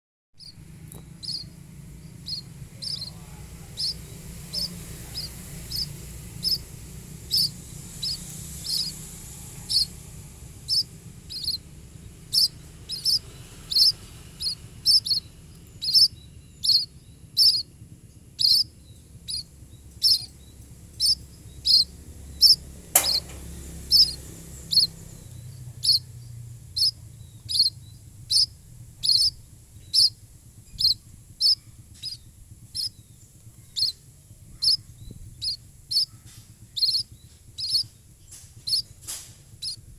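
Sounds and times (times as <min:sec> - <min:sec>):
bird chick cheeping: 0:00.4 - 0:17.7, 0:18.3 - 0:39.9
sharp click: 0:23.0 - 0:24.2.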